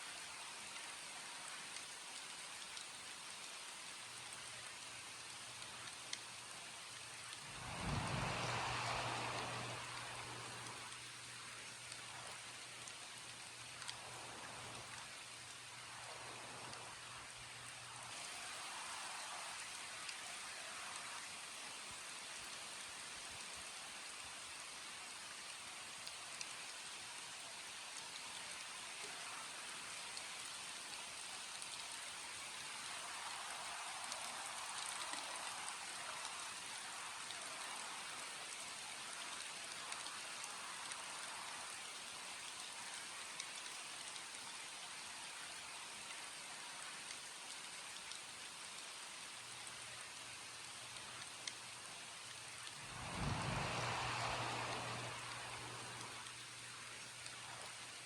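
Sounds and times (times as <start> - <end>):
steady rain falling: 0.0 - 58.0
raindrops ticking: 1.7 - 18.9, 30.0 - 58.0.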